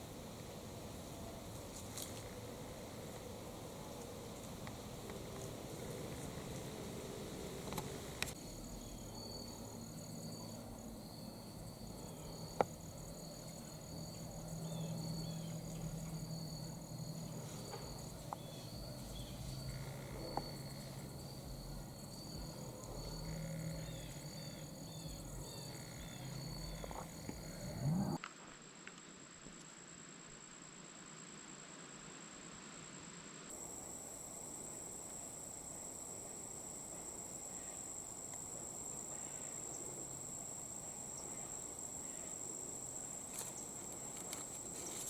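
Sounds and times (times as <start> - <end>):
insects trilling: 0.0 - 28.2, 33.5 - 45.0
faint low hum: 0.0 - 32.9.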